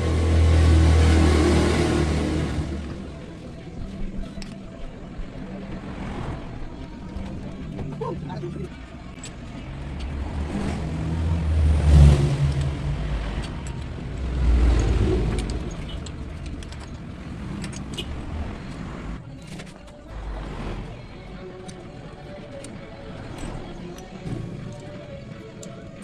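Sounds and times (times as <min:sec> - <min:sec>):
passing vehicle engine: 0:00.0 - 0:04.2, 0:04.8 - 0:08.0, 0:08.6 - 0:19.4, 0:20.1 - 0:22.2.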